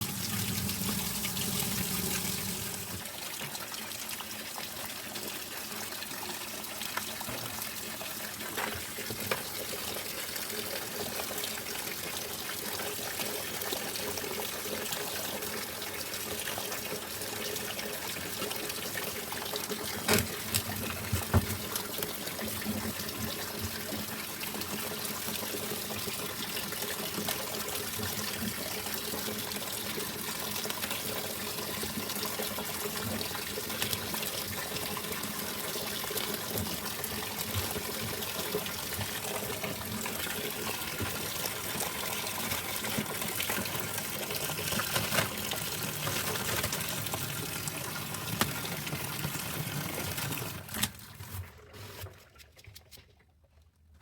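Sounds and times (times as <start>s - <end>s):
liquid pouring with crackle: 18.0s - 53.7s.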